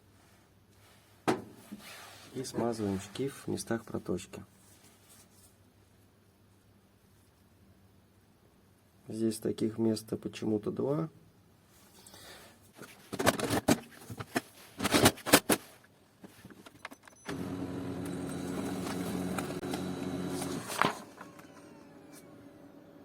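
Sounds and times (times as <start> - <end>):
printer clunk: 17.3 - 22.3
printer mechanism running: 17.3 - 23.0.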